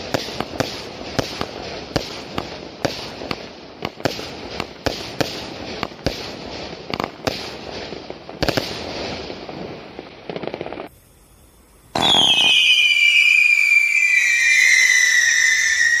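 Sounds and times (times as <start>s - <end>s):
firework bangs: 0.0s - 11.2s, 11.8s - 16.0s
firework crackling: 0.0s - 16.0s
falling firework whistle: 10.8s - 16.0s.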